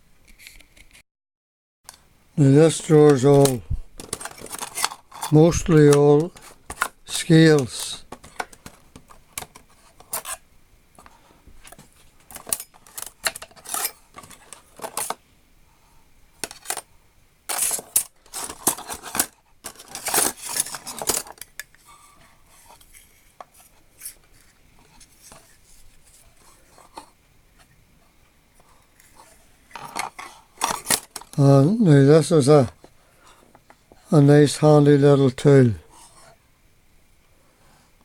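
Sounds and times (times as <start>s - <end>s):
metal tools clinking in a drawer: 2.8s - 8.8s, 9.4s - 10.4s, 12.3s - 15.2s, 16.4s - 16.9s, 17.5s - 21.6s, 29.8s - 31.4s.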